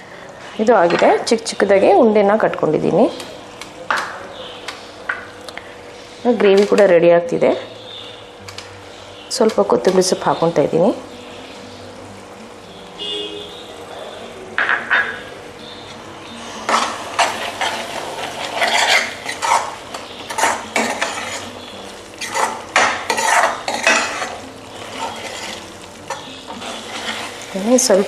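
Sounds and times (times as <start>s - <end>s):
gravy simmering: 15.6s - 28.0s
spoon scraping a pan: 16.5s - 28.0s.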